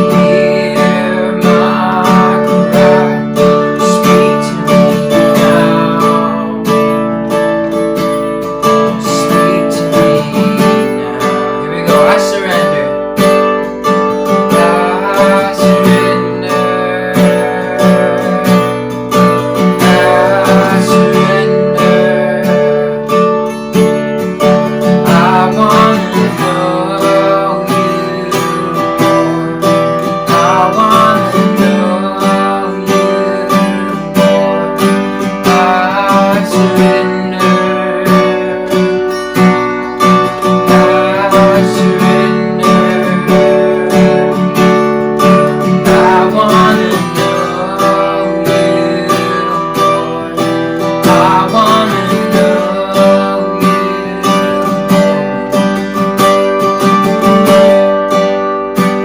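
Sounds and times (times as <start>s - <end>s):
acoustic guitar strumming chords: 0.0s - 59.0s.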